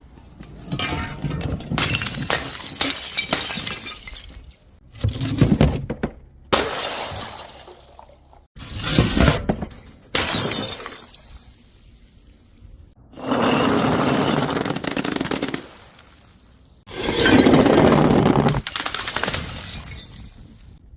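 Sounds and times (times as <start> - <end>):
glass bottles shattering: 0.7 - 4.8, 6.5 - 8.4, 10.1 - 11.6, 18.7 - 20.8
glass fragments tinkling: 19.3 - 20.8.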